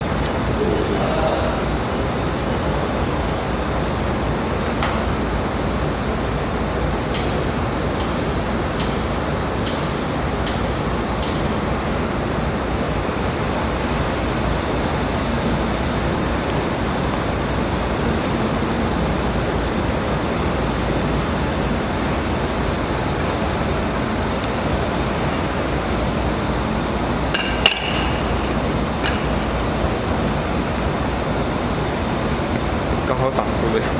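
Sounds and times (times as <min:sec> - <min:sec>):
laser welder high whine: 0:07.1 - 0:12.3.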